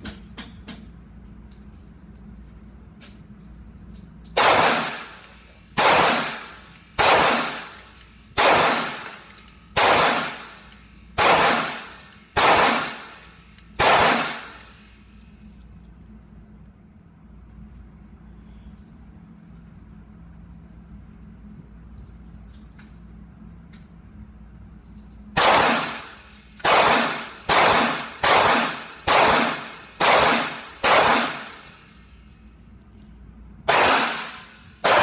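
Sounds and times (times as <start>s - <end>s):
handgun shots ringing: 4.3s - 14.8s, 25.4s - 31.9s, 33.7s - 35.0s.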